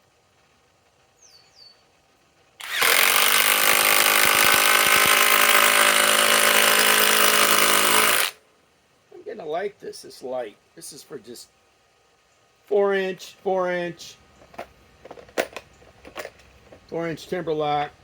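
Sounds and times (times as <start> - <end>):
impact driver driving screw: 2.6 - 8.4.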